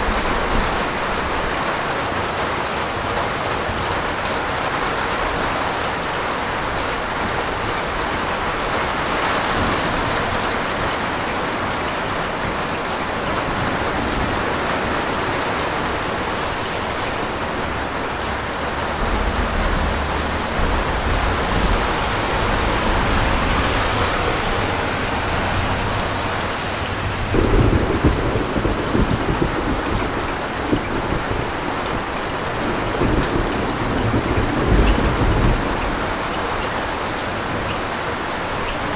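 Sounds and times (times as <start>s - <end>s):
heavy rain hissing: 0.0s - 38.9s
distant thunder rumble: 6.6s - 38.8s
loud thunder peal: 16.8s - 36.3s.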